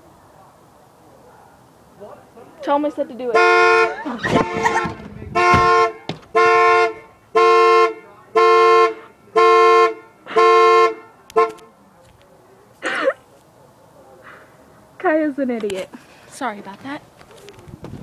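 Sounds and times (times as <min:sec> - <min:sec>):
car horn blasts: 0:03.3 - 0:11.7.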